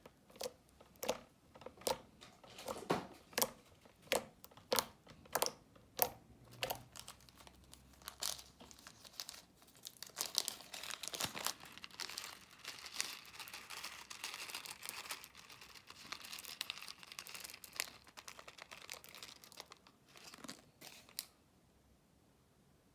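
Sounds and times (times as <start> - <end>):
sticky slime clicks: 3.4 - 7.0
slime crackling and popping bubbles: 3.9 - 9.1, 9.8 - 20.3.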